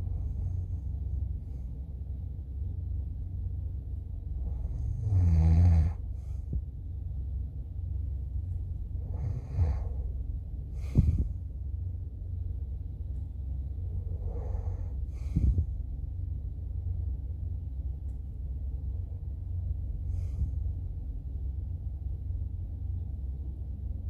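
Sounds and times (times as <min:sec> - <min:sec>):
steady low rumble: 0:00.0 - 0:24.0
person snoring: 0:04.7 - 0:06.0.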